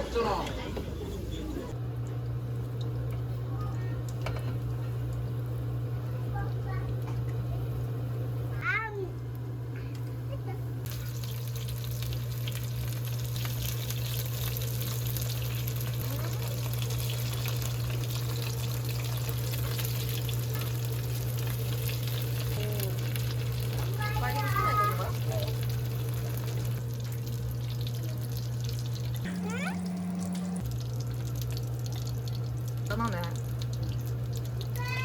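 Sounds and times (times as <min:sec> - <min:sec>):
constant low hum: 0:00.0 - 0:35.0.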